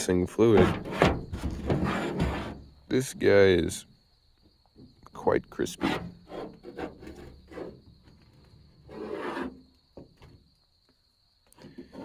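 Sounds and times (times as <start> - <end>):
rubbing and scraping brake lines: 0.0 - 2.9, 5.5 - 10.4, 11.5 - 12.0
metal rasp: 0.4 - 2.6, 5.7 - 7.9, 8.8 - 9.6, 11.8 - 12.0.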